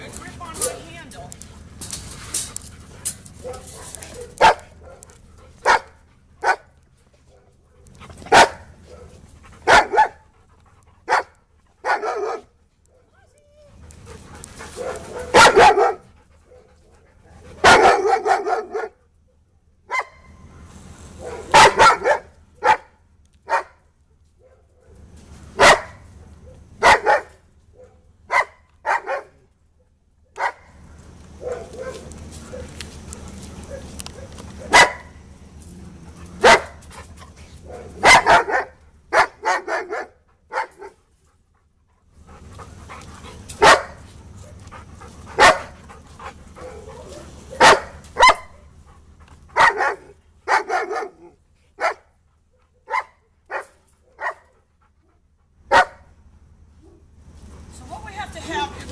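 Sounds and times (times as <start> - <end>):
dog barking: 3.4 - 6.7, 7.3 - 10.2, 11.1 - 13.1, 14.8 - 16.7, 17.6 - 19.0, 19.9 - 20.3, 21.2 - 22.9, 23.5 - 23.8, 25.6 - 29.4, 30.4 - 30.8, 31.4 - 32.8, 33.6 - 35.2, 36.4 - 36.8, 37.6 - 41.0, 43.6 - 44.6, 45.4 - 45.8, 46.6 - 48.6, 49.6 - 52.1, 52.8 - 54.5, 55.7 - 56.1.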